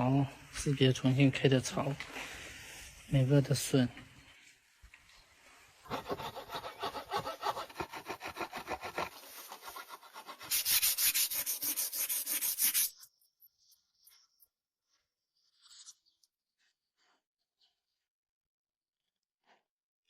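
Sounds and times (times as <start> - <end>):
hand tool strokes on wood: 5.9 - 13.0.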